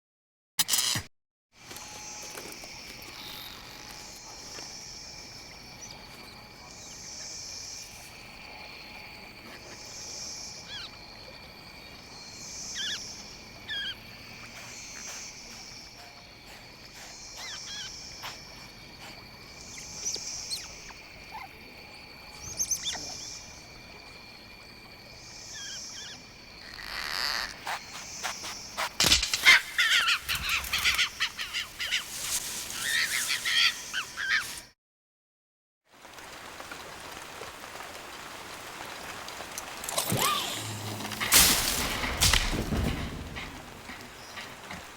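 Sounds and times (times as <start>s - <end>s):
high insect drone: 1.6s - 34.7s, 36.1s - 44.9s
soft chirping pulses: 3.1s - 34.7s
short bird calls: 29.4s - 34.6s.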